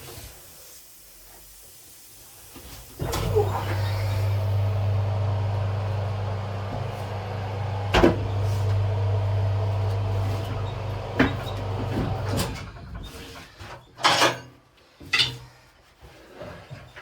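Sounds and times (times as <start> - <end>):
machine motor humming: 3.0 - 12.5.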